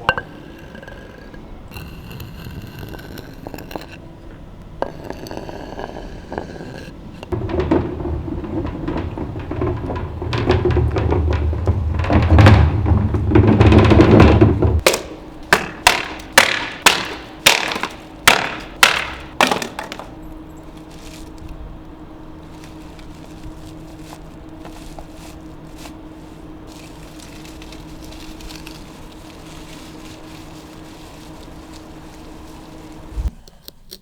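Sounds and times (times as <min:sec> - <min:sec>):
faint steady hum: 0:00.0 - 0:34.0
sharp knocks: 0:07.2 - 0:20.2.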